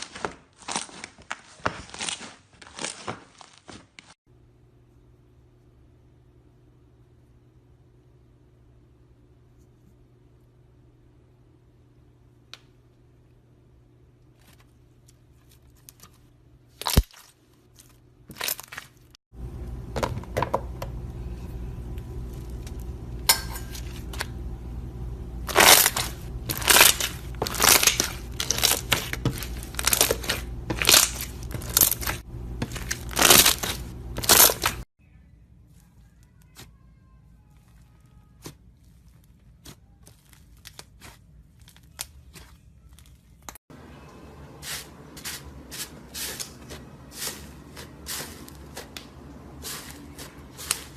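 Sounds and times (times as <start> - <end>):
steady low hum: 19.4 - 36.2.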